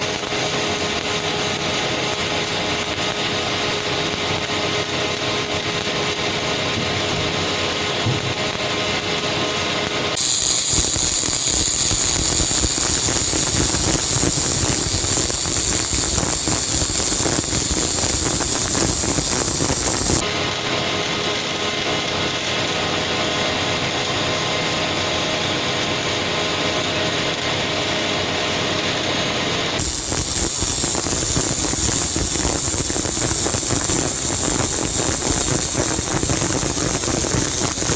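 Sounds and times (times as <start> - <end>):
machine hum with steady tones: 10.2 - 20.2, 29.8 - 37.9
welding arc crackling and hissing: 10.2 - 20.2, 29.8 - 37.9.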